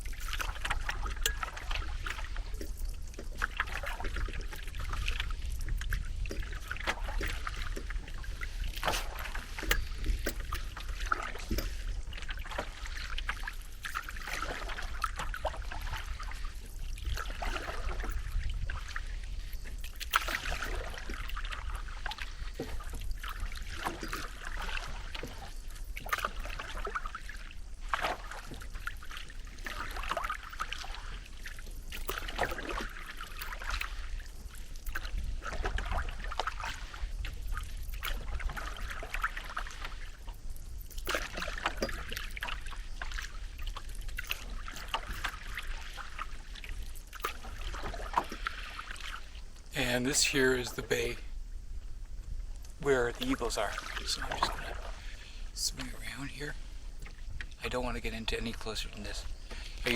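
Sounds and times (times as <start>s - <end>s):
paddle splashing in water: 0.0s - 51.9s, 52.7s - 59.9s.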